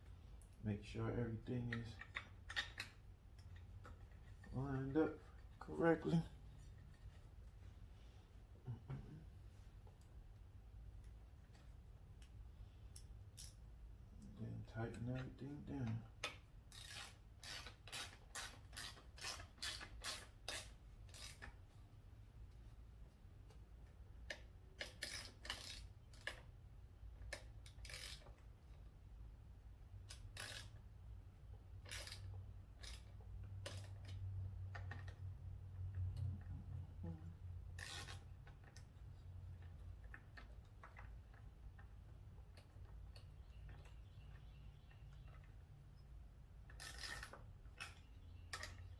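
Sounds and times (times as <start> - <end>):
low steady hum: 0.0 - 18.3
ratchet wrench ratcheting: 16.2 - 21.6, 24.3 - 26.5, 27.2 - 28.5, 30.0 - 30.9, 31.8 - 35.2, 37.7 - 38.9, 46.6 - 48.9.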